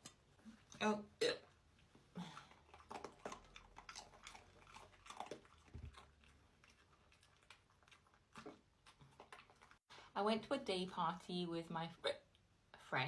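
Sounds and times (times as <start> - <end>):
faint chewing and crunching: 1.4 - 10.1.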